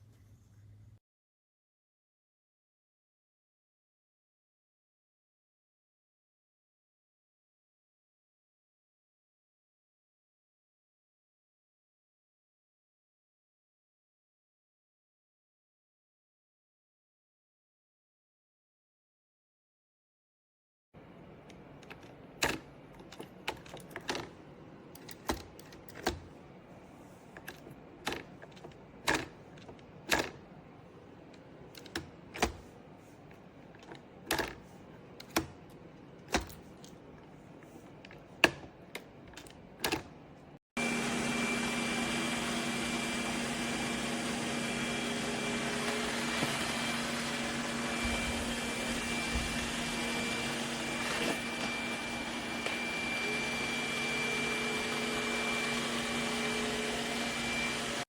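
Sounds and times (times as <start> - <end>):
motor whirring with high whine: 40.8 - 58.0.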